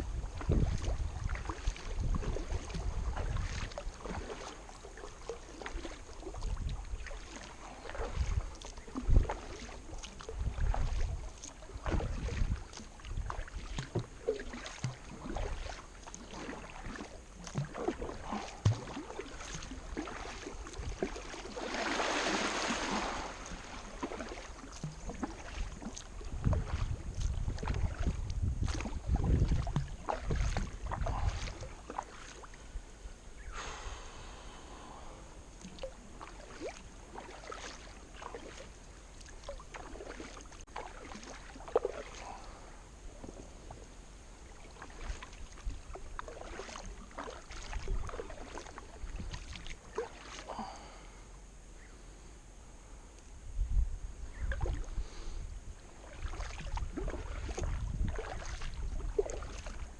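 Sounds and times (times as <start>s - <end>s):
wind on microphone: 0.0s - 4.3s, 6.3s - 7.1s, 7.9s - 14.1s, 25.8s - 31.8s, 53.4s - 59.9s
rush of water: 0.0s - 32.6s, 33.4s - 51.1s, 54.3s - 59.9s
paddle splashing in water: 0.0s - 32.7s, 33.4s - 51.1s, 54.3s - 59.9s.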